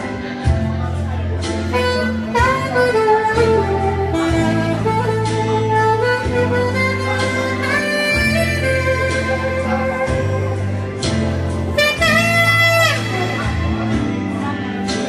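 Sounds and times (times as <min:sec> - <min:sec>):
backing track with bass line: 0:00.0 - 0:15.0
saxophone melody: 0:00.9 - 0:15.0.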